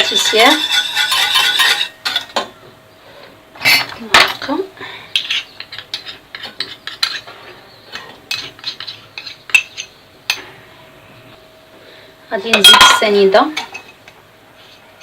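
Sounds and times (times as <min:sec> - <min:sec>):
metal spoon scraping a pan: 0:00.0 - 0:02.4, 0:05.2 - 0:10.4.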